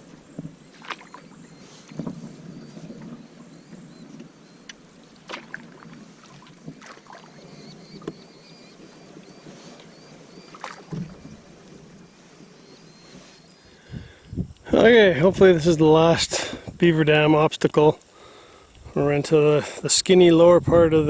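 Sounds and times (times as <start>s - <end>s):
water splashing around canoe: 0.0s - 14.8s.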